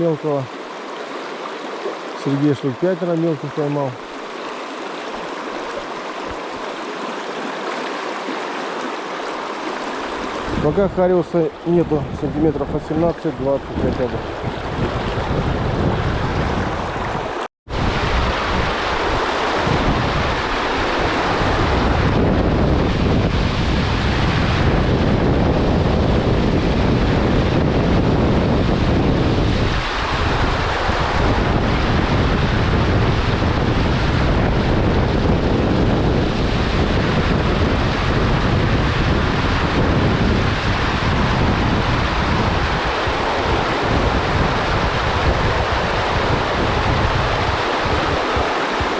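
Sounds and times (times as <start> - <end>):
river water rushing: 0.0 - 15.6, 16.3 - 21.9, 40.4 - 48.9
wind buffeting microphone: 9.4 - 48.9.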